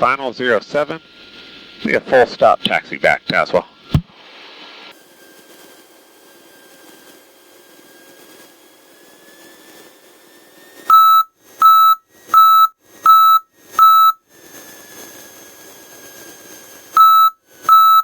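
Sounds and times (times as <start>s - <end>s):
sharp high warning beeps: 10.9s - 14.2s, 17.0s - 18.0s.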